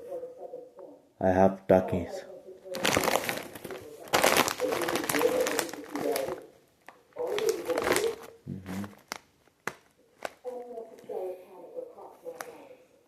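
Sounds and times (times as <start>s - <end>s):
plastic chip bag crinkling: 2.7s - 11.0s.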